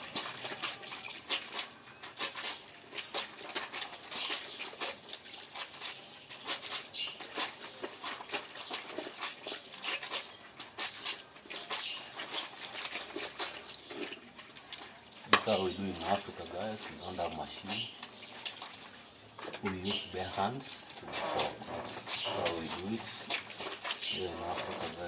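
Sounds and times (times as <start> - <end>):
small bird chirping: 2.0 - 3.2, 4.2 - 4.7, 11.5 - 12.4, 16.6 - 25.0
rustling and clicking: 19.4 - 25.0.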